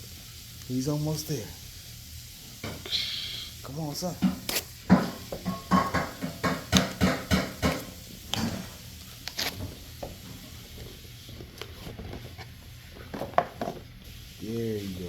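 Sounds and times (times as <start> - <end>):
packaging crinkling and rustling: 7.8 - 14.0.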